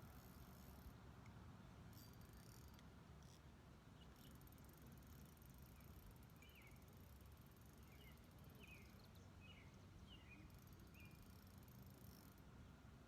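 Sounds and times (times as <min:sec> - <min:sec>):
thin high buzz: 0:01.9 - 0:03.5
faint bird chirps: 0:04.0 - 0:12.4.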